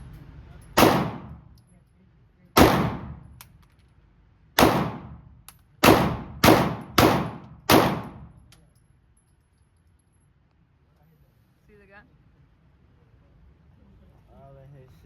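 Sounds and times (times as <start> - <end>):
gunshots: 0.8 - 1.5, 2.6 - 3.3, 4.6 - 8.4.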